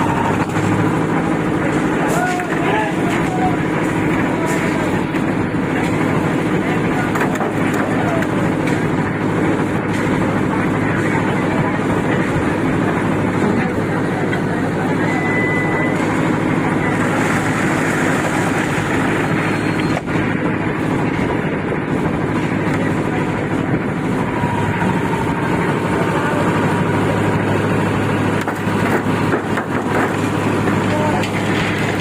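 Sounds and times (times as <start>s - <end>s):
concrete mixer engine droning: 0.0s - 32.0s.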